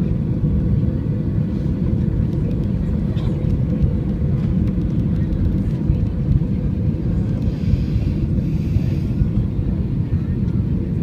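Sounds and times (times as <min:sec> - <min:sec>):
airplane cabin engine rumble: 0:00.0 - 0:11.0.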